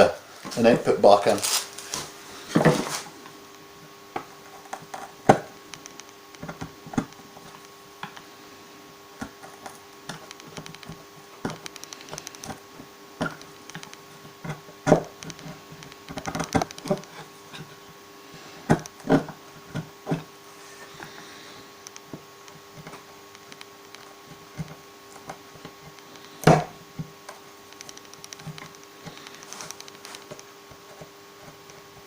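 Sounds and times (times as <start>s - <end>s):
faint steady hum: 0.0s - 32.0s.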